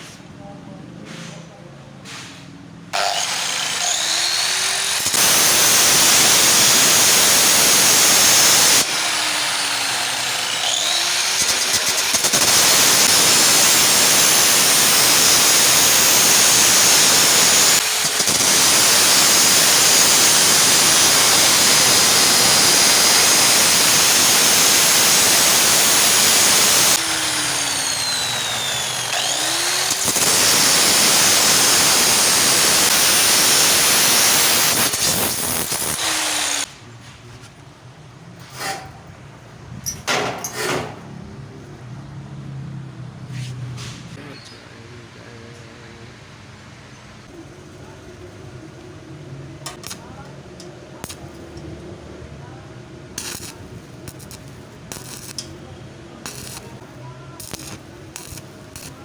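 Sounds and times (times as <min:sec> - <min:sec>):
angle grinder cutting metal sheet: 0:03.0 - 0:36.7, 0:53.2 - 0:55.5, 0:56.2 - 0:59.0.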